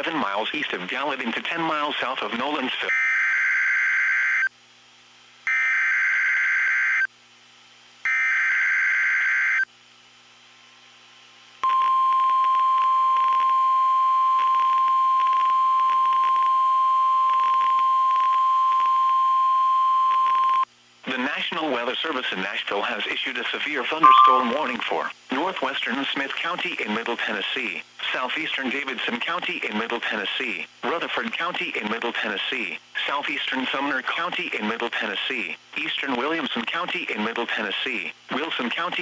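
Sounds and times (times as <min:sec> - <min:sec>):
steady high alarm tone: 0:24.0 - 0:25.0.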